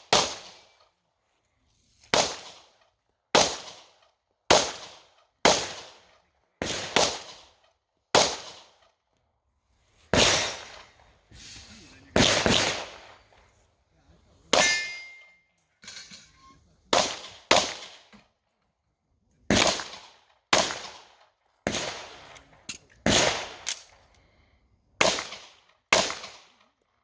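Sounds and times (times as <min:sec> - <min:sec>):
pistol shots echoing: 0:00.0 - 0:00.6, 0:04.5 - 0:06.0, 0:06.6 - 0:07.5, 0:08.1 - 0:08.8, 0:10.1 - 0:10.8, 0:12.2 - 0:13.2, 0:16.9 - 0:18.1, 0:19.5 - 0:22.3, 0:23.0 - 0:23.8, 0:25.0 - 0:26.5
metallic clang: 0:14.6 - 0:16.5.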